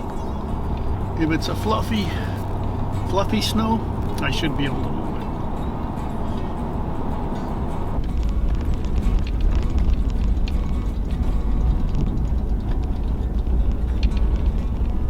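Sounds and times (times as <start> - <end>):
vehicle driving rumble: 0.0 - 15.0
small ticks and crackles: 8.0 - 15.0.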